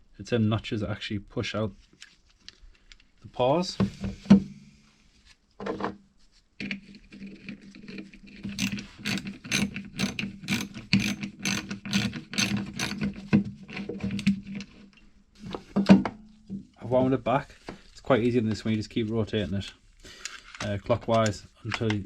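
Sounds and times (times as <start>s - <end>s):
ratcheting clicks of recoil starter: 8.5s - 13.1s.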